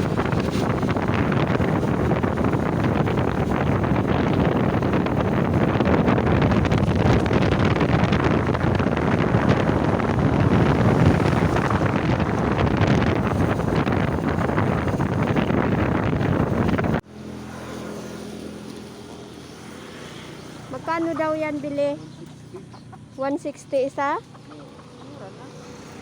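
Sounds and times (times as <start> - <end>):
wind buffeting microphone: 0.0 - 17.0
vehicle road noise: 0.0 - 26.0.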